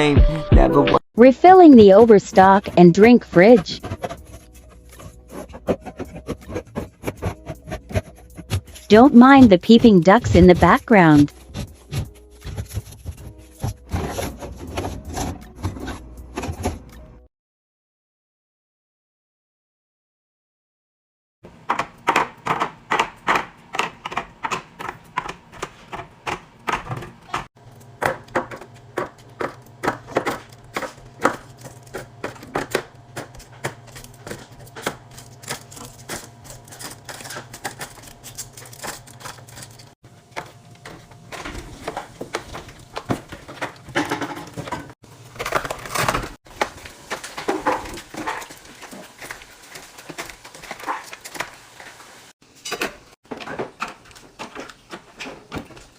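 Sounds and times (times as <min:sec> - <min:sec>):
fridge hum: 0:01.2 - 0:17.3, 0:21.5 - 0:55.9.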